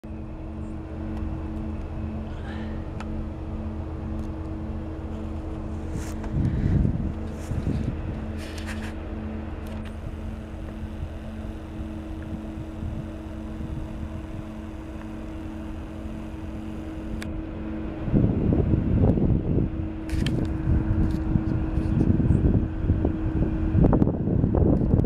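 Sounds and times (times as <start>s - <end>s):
industrial plant hum: 0.0s - 25.0s
wind gust on microphone: 5.8s - 8.9s, 17.8s - 25.0s.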